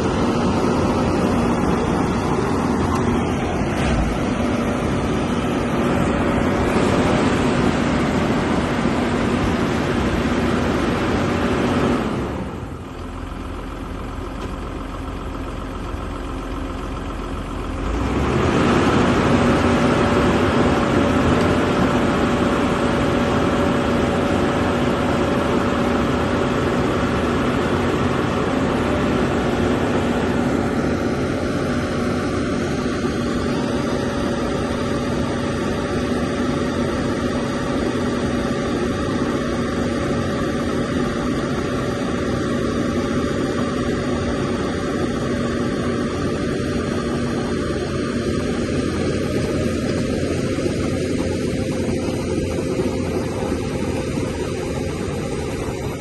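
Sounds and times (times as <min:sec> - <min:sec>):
diesel engine droning: 0:00.0 - 0:56.0.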